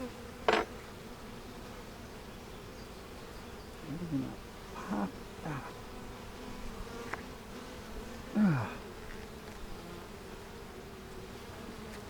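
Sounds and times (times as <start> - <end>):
honeybees buzzing: 0.0 - 12.0
person grunting: 3.9 - 5.8, 8.3 - 8.9.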